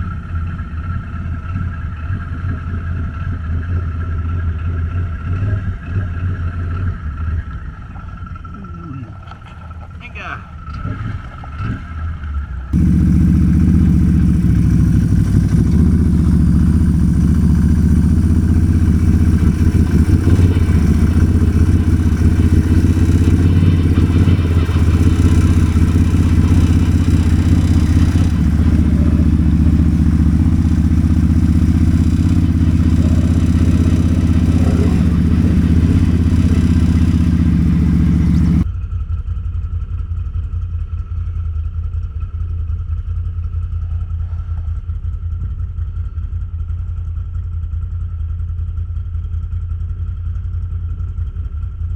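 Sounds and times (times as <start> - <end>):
atv engine running: 0.0 - 38.7, 43.3 - 46.2.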